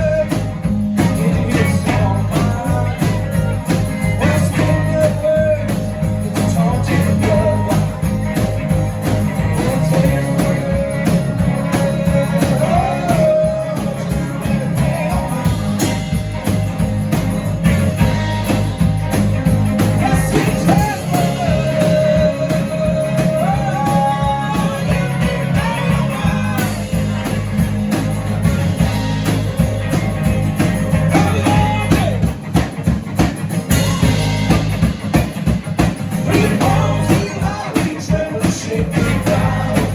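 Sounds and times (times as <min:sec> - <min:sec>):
person singing: 0:00.0 - 0:08.6, 0:09.3 - 0:16.4, 0:19.8 - 0:27.5, 0:31.0 - 0:32.3, 0:36.2 - 0:39.9
band with guitar playing: 0:00.0 - 0:39.9.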